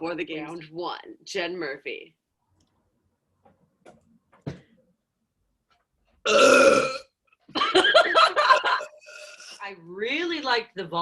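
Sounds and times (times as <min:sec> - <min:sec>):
woman burping: 0:06.3 - 0:09.6.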